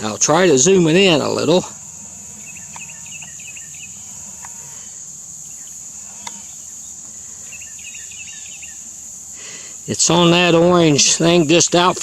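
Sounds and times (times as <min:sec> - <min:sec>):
crickets chirping: 0:00.0 - 0:12.0
bird twitter: 0:02.2 - 0:04.6, 0:05.4 - 0:08.9
faint click: 0:06.2 - 0:06.4.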